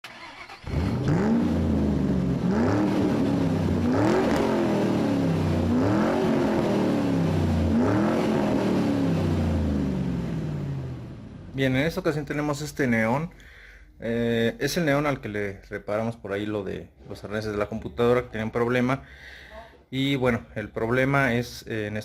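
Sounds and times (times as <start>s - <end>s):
car engine revving: 0.1s - 11.6s.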